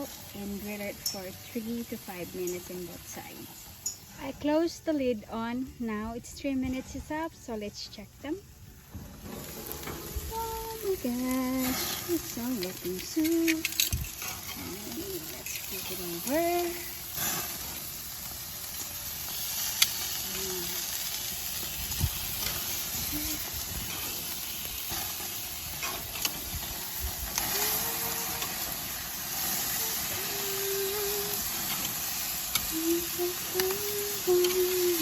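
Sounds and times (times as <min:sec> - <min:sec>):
chicken sizzling on a grill: 0:00.0 - 0:35.0.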